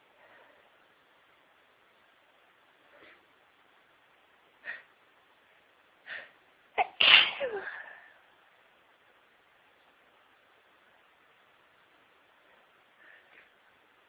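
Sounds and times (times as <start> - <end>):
woman sneezing: 6.8 - 8.0.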